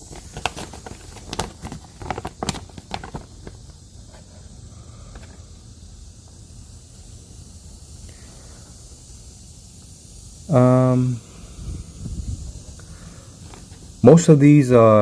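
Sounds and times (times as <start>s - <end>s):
paper crackling and rustling: 0.0s - 4.4s
steady background hiss: 0.0s - 15.0s.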